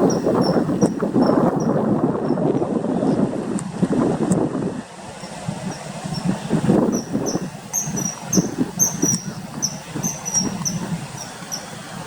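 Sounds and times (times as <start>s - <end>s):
kingfisher whistled calls: 0.0s - 1.4s, 6.9s - 11.7s
low background rumble: 0.0s - 12.0s.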